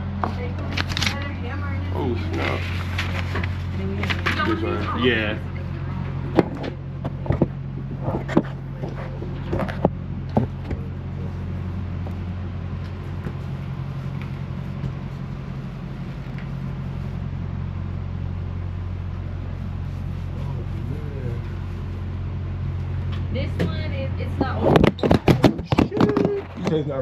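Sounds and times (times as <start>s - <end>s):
diesel truck engine idling: 0.0s - 27.0s.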